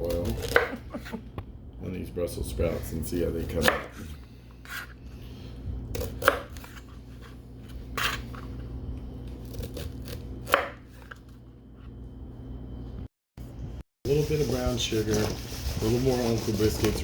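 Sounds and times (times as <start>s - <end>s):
knife chopping on cutting board: 3.5s - 4.0s, 5.9s - 6.8s, 9.5s - 11.2s.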